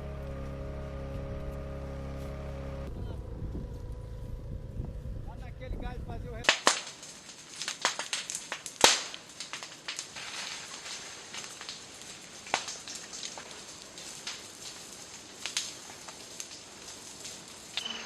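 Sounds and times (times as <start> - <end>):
low rumble: 0.0 - 6.5
fire crackling and popping: 6.4 - 18.0.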